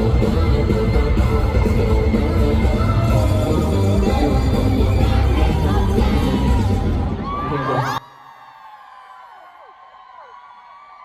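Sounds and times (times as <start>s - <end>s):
live band music with heavy bass: 0.0s - 7.4s
crowd screaming and cheering: 0.0s - 11.0s.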